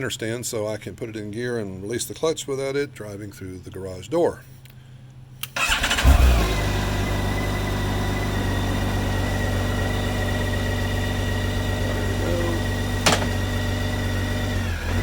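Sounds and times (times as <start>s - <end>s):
motorcycle engine idling: 6.8s - 15.0s.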